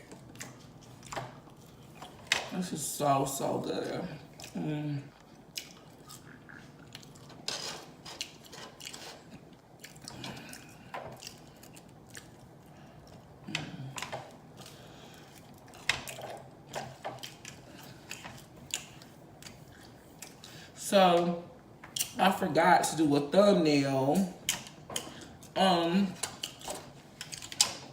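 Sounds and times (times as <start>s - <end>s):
chewing with lip smacks: 0.0s - 2.3s, 4.3s - 20.6s.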